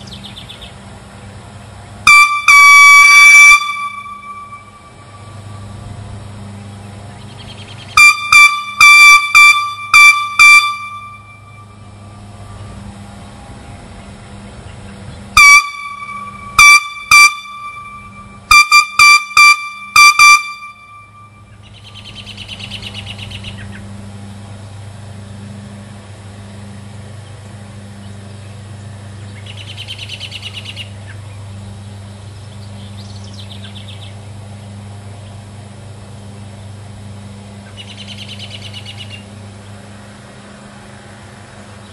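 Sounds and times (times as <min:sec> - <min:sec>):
air horn toots: 0:02.0 - 0:06.0, 0:07.9 - 0:12.4, 0:15.4 - 0:21.6
bird chirps: 0:06.6 - 0:12.6, 0:14.6 - 0:23.9, 0:29.2 - 0:35.4, 0:37.6 - 0:39.8.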